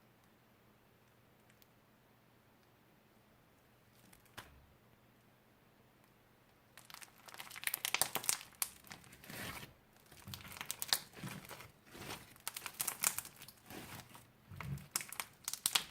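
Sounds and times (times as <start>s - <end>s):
slime and plastic packaging crinkling: 6.8s - 15.9s.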